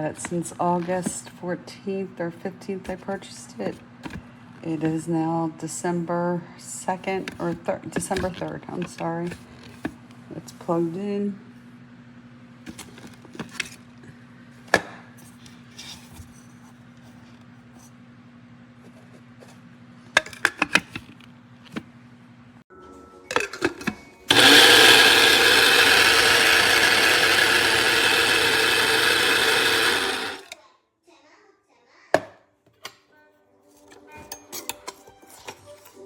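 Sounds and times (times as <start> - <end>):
electric grinder motor grinding: 24.3 - 30.6.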